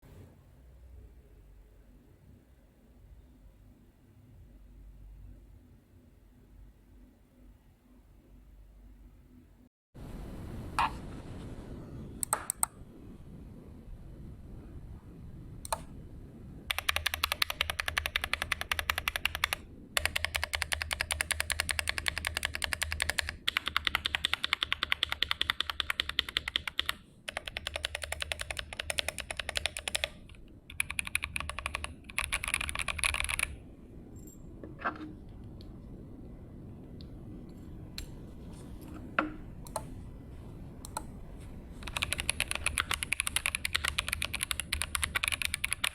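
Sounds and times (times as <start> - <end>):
mechanical keyboard typing: 16.7 - 33.6, 41.8 - 45.9.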